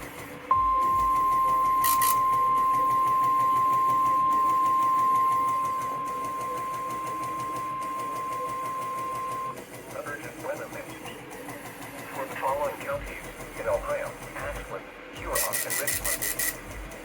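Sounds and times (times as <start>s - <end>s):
steady warning alarm beep: 0.4s - 9.6s, 15.2s - 16.6s.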